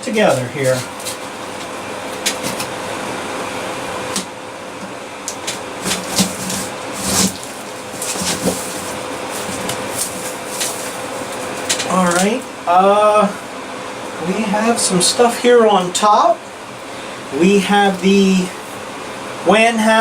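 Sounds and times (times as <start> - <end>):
background hum and hiss: 0.0 - 20.0
cardboard box knocks and scrapes: 5.8 - 11.6.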